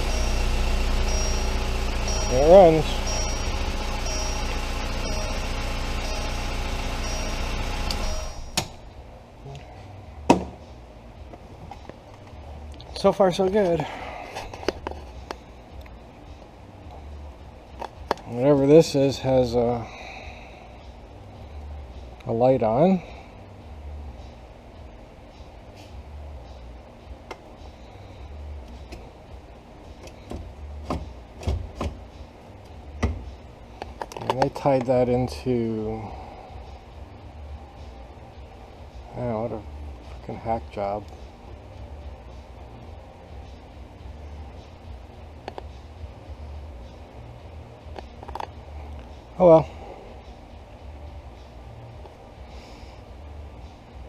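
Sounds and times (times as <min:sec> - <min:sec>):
car engine idling: 0:00.0 - 0:10.2
low steady hum: 0:00.0 - 0:54.0.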